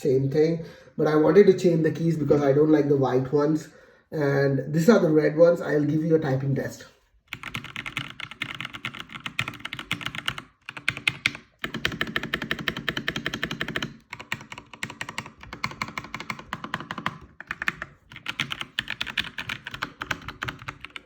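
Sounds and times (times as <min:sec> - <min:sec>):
fast typing on mechanical keyboard: 0:07.3 - 0:21.0.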